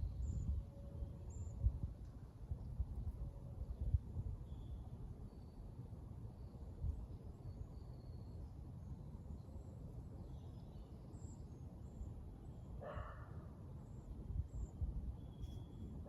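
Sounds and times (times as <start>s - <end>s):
faint bird chirps: 4.4s - 5.7s, 13.8s - 16.0s.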